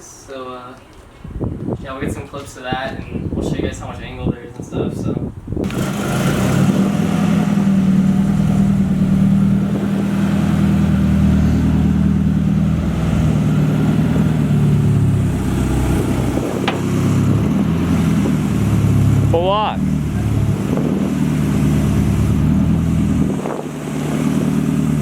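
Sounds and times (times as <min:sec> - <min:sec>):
car engine running steadily: 0:05.7 - 0:25.0.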